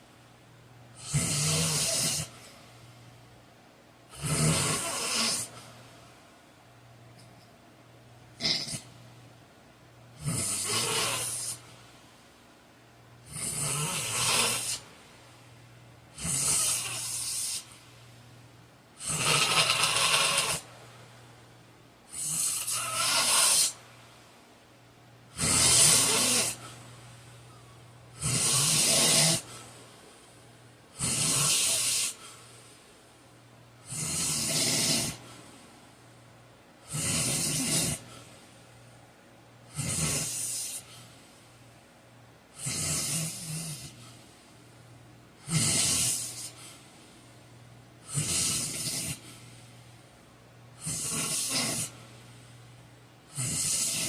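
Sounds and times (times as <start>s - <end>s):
man snoring loudly: 1.0s - 2.4s, 4.1s - 5.5s, 8.4s - 8.8s, 10.2s - 11.6s, 13.2s - 14.8s, 16.2s - 17.7s, 19.0s - 20.6s, 22.1s - 23.8s, 25.3s - 26.6s, 28.2s - 29.5s, 31.0s - 32.2s, 33.8s - 35.2s, 36.9s - 38.0s, 39.7s - 40.8s, 42.6s - 44.0s, 45.4s - 46.6s, 48.1s - 49.2s, 50.8s - 51.9s, 53.3s - 54.0s.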